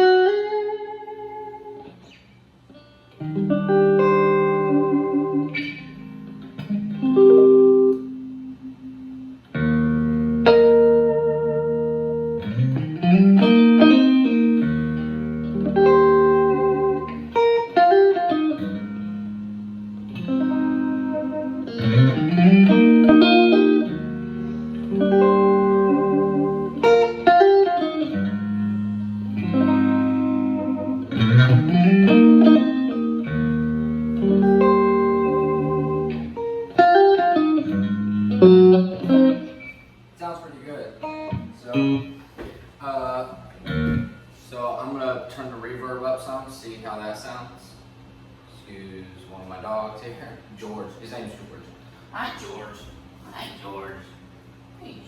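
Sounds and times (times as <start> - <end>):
electric guitar chord riff: 0.0 - 40.0, 41.0 - 42.3, 43.6 - 44.3.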